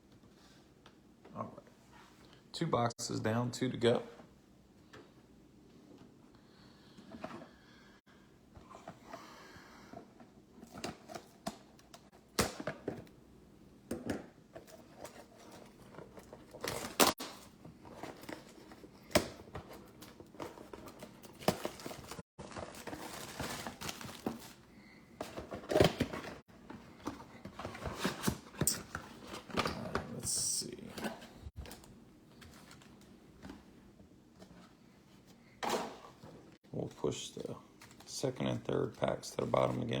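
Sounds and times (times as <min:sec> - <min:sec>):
cardboard handling: 0:14.6 - 0:30.1
plastic wrap crinkling: 0:20.2 - 0:24.7.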